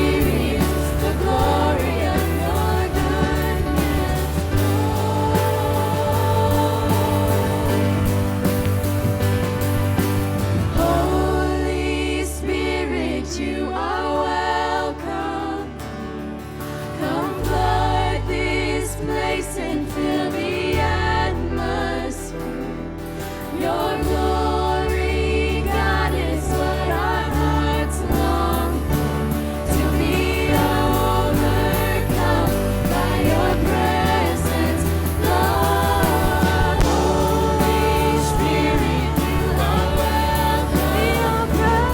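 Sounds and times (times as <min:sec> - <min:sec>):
people singing: 0:00.0 - 0:41.9
worship band playing: 0:00.0 - 0:41.9.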